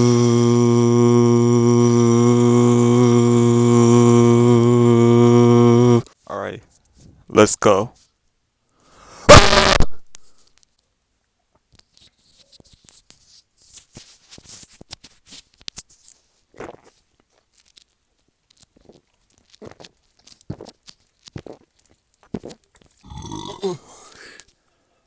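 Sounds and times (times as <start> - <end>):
quiet irregular crackles and clicks: 10.1 - 23.1.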